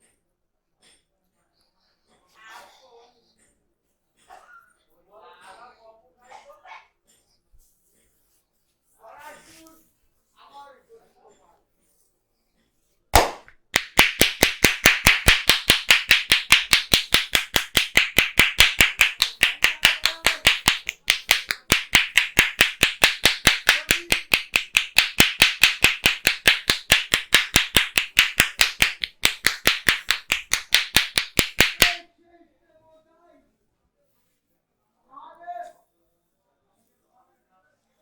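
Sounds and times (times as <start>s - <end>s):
hands striking body in massage: 13.2s - 32.0s.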